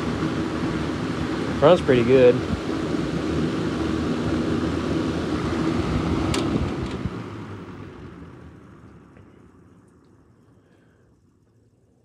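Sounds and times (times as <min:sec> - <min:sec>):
box fan running: 0:00.0 - 0:12.0
fan switch click: 0:06.2 - 0:07.1.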